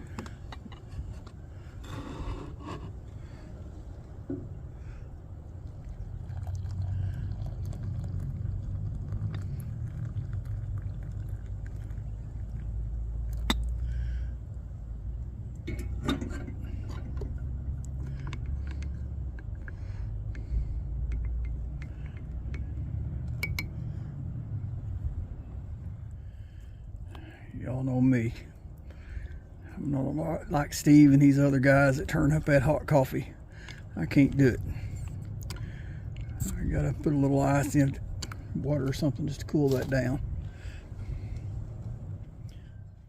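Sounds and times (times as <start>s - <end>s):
steady low rumble: 0.0s - 43.0s.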